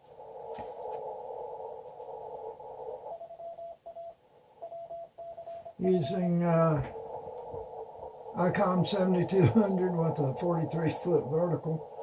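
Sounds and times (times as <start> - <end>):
radio hiss: 0.0 - 12.0
morse code tone: 3.1 - 6.5.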